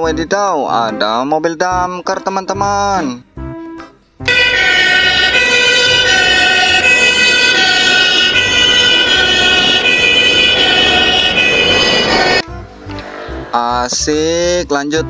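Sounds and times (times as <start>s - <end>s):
fire engine siren high-low: 4.3s - 12.4s.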